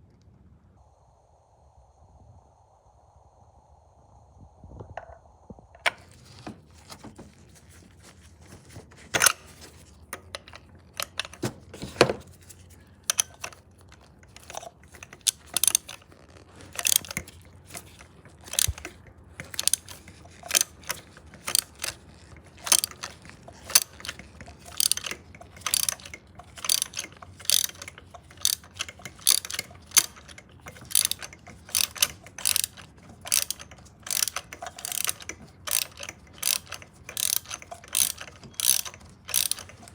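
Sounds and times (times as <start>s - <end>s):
ratchet wrench clicking: 13.0s - 13.6s, 14.3s - 39.9s.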